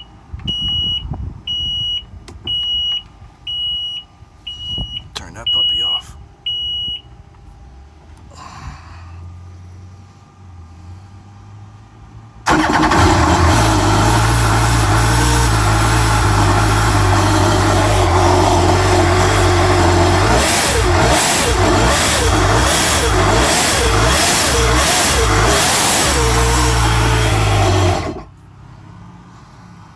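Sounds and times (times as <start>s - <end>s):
engine starting and running loud: 12.4s - 28.3s
engine throttle surges: 12.4s - 28.3s.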